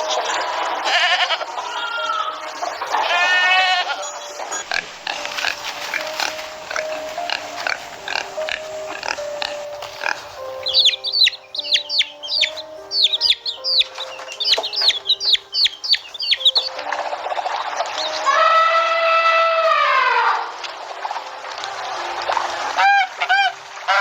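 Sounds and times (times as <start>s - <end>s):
high falling chirps: 0.0s - 20.6s
simple music melody: 0.0s - 24.0s
animal grunting: 0.3s - 10.6s.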